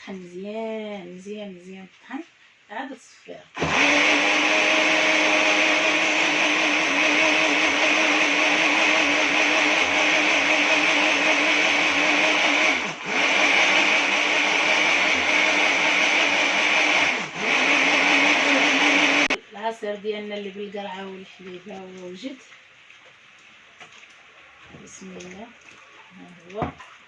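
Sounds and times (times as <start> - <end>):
electric blender running: 3.6 - 19.4.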